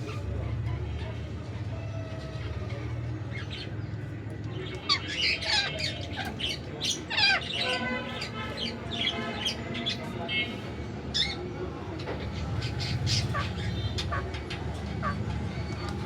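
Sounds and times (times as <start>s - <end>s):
parrots squawking: 4.8s - 9.9s, 12.6s - 15.9s.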